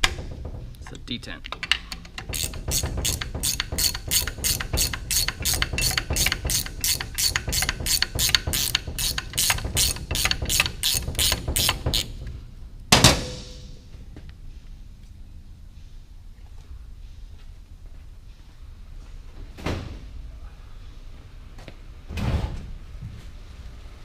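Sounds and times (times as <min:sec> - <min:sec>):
hand ratchet clicking: 0:00.0 - 0:12.3
loud metal clank: 0:01.7 - 0:12.2, 0:12.9 - 0:13.9.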